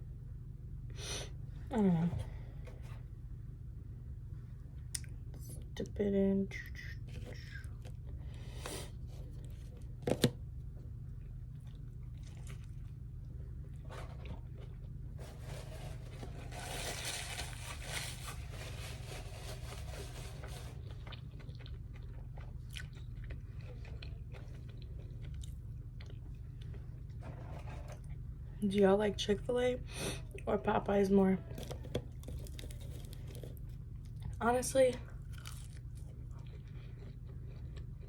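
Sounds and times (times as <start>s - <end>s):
steady low hum: 0.0s - 38.0s
person biting and chewing food: 11.4s - 15.2s, 19.8s - 27.2s, 35.2s - 38.0s.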